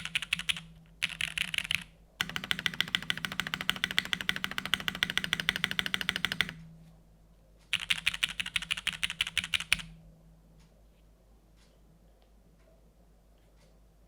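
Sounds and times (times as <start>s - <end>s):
mechanical keyboard typing: 0.0s - 6.6s, 7.7s - 9.9s.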